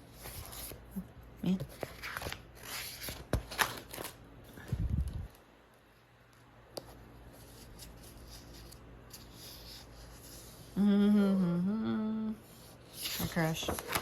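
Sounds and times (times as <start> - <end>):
paper rustling: 1.5 - 5.2, 12.9 - 14.0.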